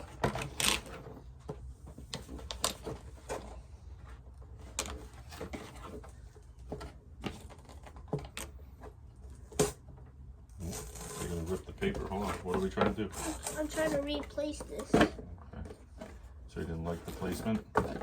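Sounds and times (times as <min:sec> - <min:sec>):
paper and cardboard crackling: 0:10.6 - 0:15.1.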